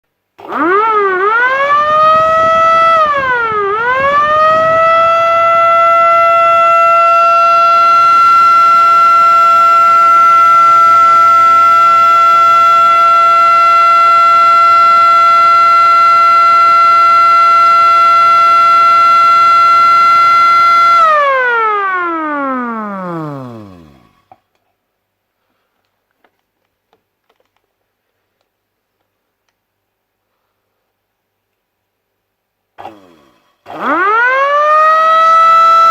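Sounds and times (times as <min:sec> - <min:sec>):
air-raid siren winding: 0:00.4 - 0:24.4, 0:32.8 - 0:35.9.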